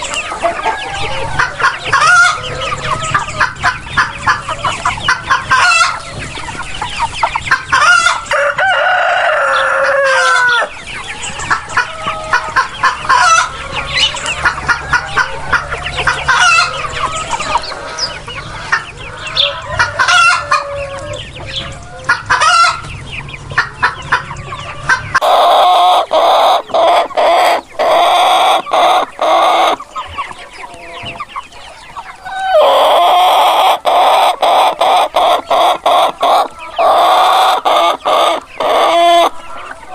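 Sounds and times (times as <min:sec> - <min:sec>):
chickens clucking: 0:00.0 - 0:39.9
rooster crowing: 0:07.8 - 0:10.7, 0:32.2 - 0:33.5.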